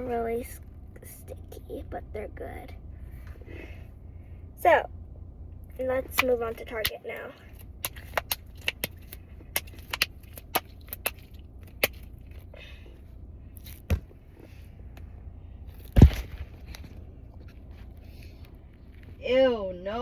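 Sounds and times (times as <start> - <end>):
low steady hum: 0.0 - 20.0
thumps of objects: 13.7 - 14.2.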